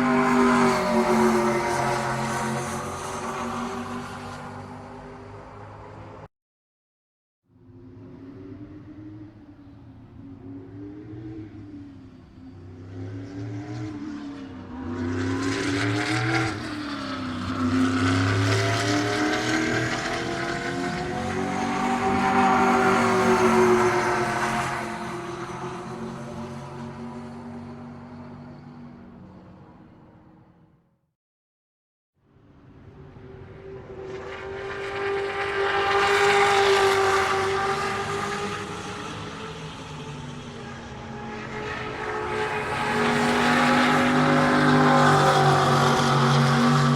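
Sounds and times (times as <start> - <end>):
race car engine revving: 12.6 - 27.2, 33.6 - 46.9.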